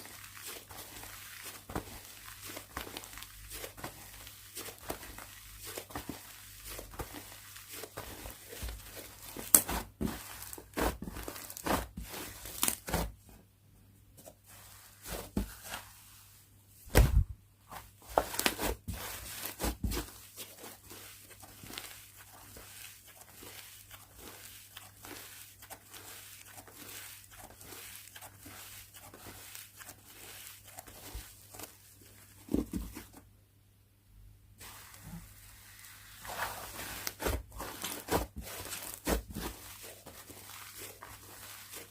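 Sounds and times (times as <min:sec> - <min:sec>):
hands squishing slime: 0:00.0 - 0:13.1, 0:18.0 - 0:32.6, 0:34.6 - 0:41.9
soft thump: 0:16.9 - 0:17.4.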